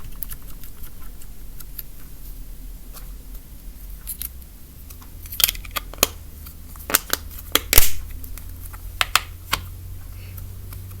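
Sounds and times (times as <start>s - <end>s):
slime clicking and popping: 5.3s - 6.2s, 6.8s - 9.7s.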